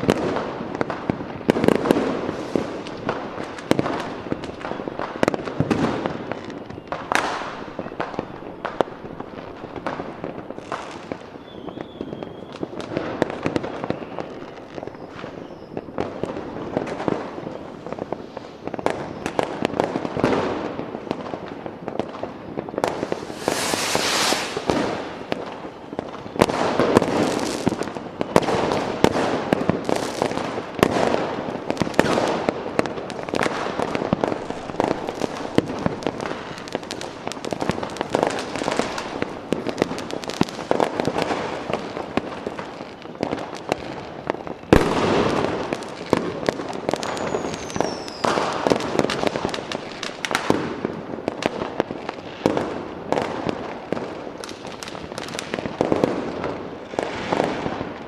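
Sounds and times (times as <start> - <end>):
fireworks crackling and popping: 0.0 - 58.0
firework bang: 1.6 - 4.0, 22.8 - 25.6
firework whistle falling in pitch: 11.4 - 12.7, 22.9 - 26.0, 47.1 - 48.4.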